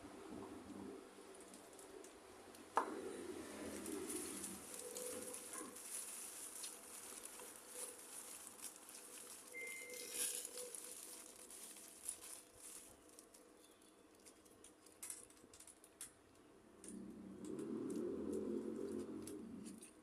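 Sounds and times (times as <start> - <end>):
eating clicks and rustles: 3.6 - 16.2.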